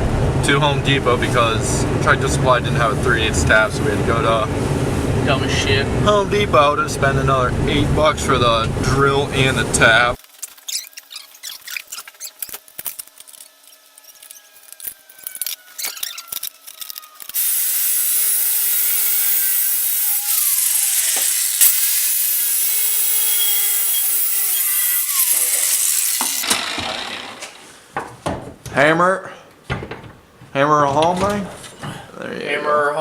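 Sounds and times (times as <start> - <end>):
angle grinder grinding metal: 10.4 - 27.7.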